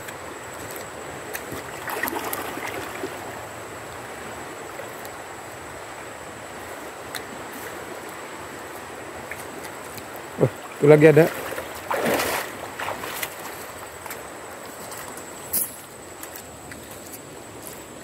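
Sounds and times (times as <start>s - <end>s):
river water rushing: 0.0s - 18.0s
splashes and knocks: 1.3s - 3.2s, 10.6s - 14.2s.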